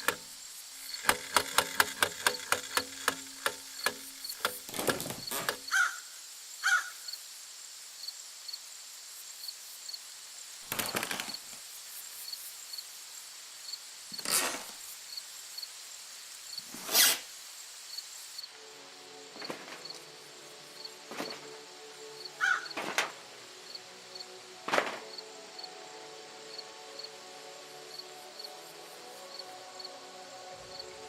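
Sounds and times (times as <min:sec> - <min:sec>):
faint high ticking: 0:00.0 - 0:05.7
harsh wood-like scraping: 0:00.8 - 0:05.7, 0:14.2 - 0:14.8.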